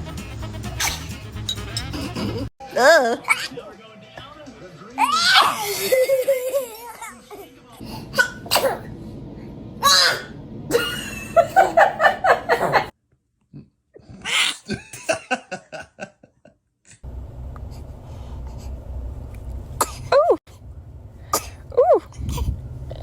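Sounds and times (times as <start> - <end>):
person sneezing: 8.0 - 8.9
person laughing: 10.7 - 12.9, 14.6 - 16.5.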